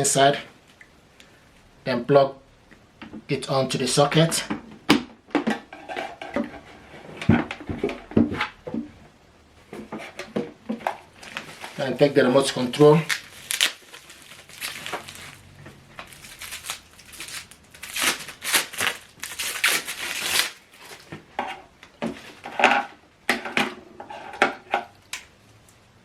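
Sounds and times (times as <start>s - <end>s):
packaging crinkling and tearing: 11.2s - 21.1s.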